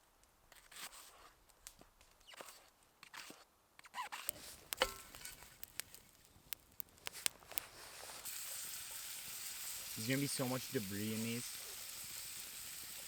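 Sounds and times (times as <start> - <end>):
food sizzling in a pan: 7.6 - 13.0.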